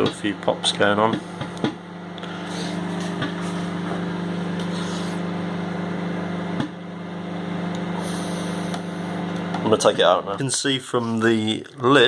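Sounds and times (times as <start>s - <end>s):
microwave oven humming: 0.0s - 12.0s.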